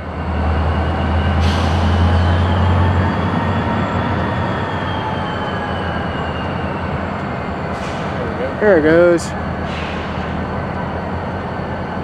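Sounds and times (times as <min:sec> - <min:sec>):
freight cars rumbling: 0:00.0 - 0:12.0
locomotive engine hum: 0:00.0 - 0:12.0.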